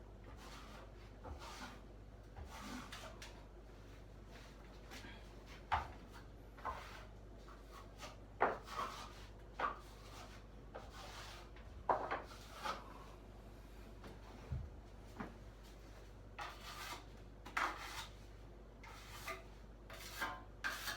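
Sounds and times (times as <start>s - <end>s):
putty knife scraping: 16.4s - 18.2s, 18.8s - 20.9s.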